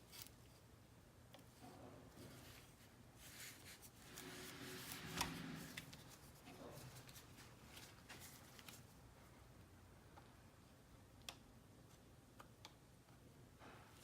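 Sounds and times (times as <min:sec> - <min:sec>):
light scraping: 0:01.6 - 0:08.4.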